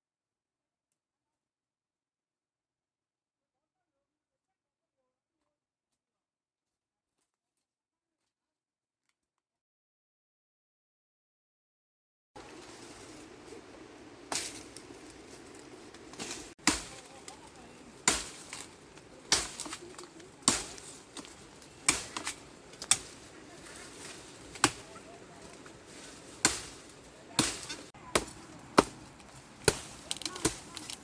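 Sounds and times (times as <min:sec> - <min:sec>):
blade chopping strikes: 0:16.1 - 0:23.3, 0:24.0 - 0:31.0.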